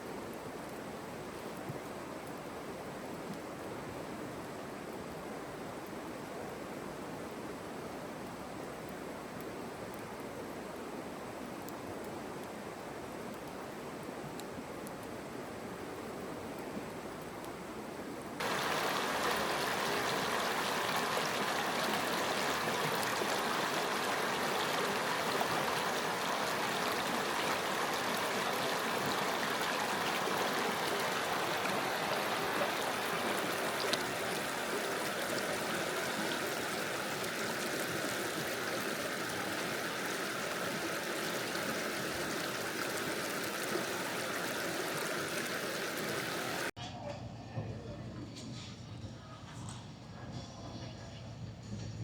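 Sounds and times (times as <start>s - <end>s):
running water: 18.4s - 46.7s.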